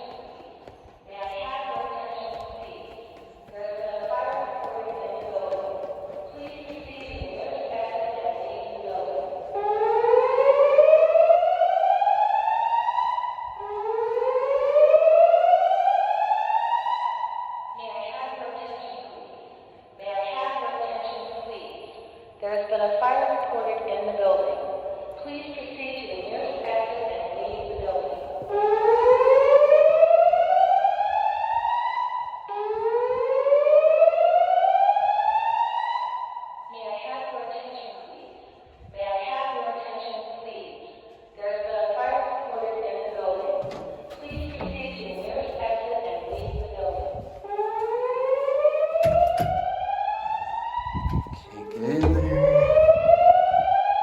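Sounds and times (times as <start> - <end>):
rising whoop alarm tone: 52.0 - 53.4.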